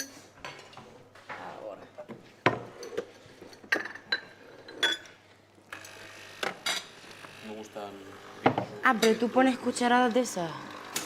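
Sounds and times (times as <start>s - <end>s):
dishes and cutlery clattering: 0.0s - 0.9s, 2.5s - 5.1s.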